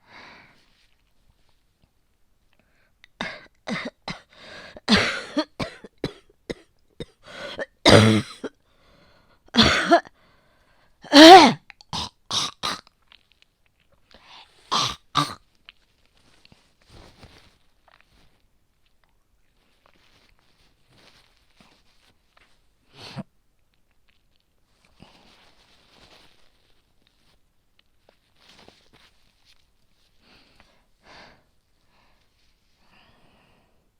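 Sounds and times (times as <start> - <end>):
person coughing: 3.2 - 8.6, 9.6 - 10.1, 11.1 - 12.8, 14.7 - 15.4.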